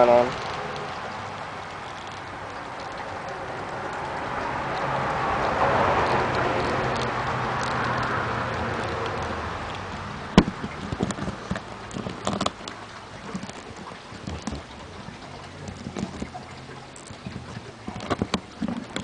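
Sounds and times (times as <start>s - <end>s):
plastic toy rustling and scraping: 10.5s - 14.8s, 15.6s - 19.0s.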